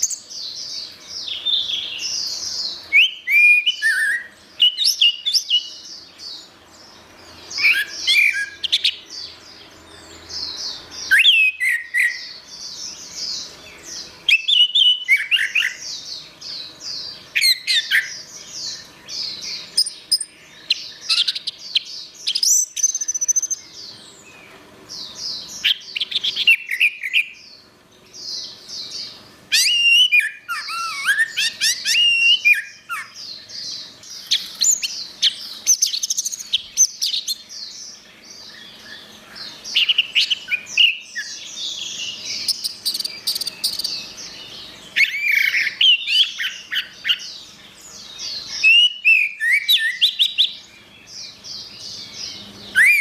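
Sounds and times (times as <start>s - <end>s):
thrush singing whistles: 1.2s - 5.8s, 7.5s - 9.0s, 10.7s - 12.4s, 14.2s - 16.0s, 17.0s - 23.7s, 29.5s - 37.7s, 39.7s - 47.4s, 48.2s - 50.8s, 51.6s - 53.0s.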